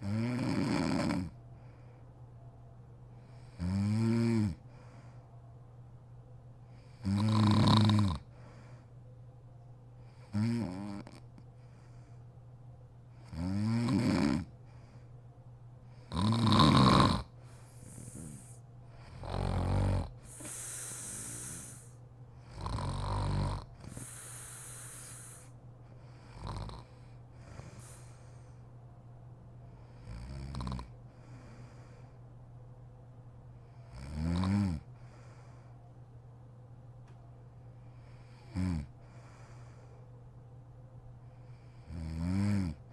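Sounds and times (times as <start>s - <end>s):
woman snoring: 0.0s - 1.4s, 3.5s - 4.6s, 7.0s - 8.3s, 10.2s - 11.2s, 13.3s - 14.5s, 16.1s - 25.6s, 26.3s - 28.2s, 30.0s - 30.9s, 34.0s - 34.9s, 38.4s - 38.9s, 41.8s - 42.8s
steady low hum: 0.0s - 42.9s
breathy hissing breaths: 4.6s - 5.4s, 7.8s - 9.0s, 11.6s - 12.4s, 14.3s - 15.2s, 15.8s - 28.8s, 31.1s - 32.3s, 35.0s - 35.8s, 37.7s - 40.1s, 41.2s - 42.0s.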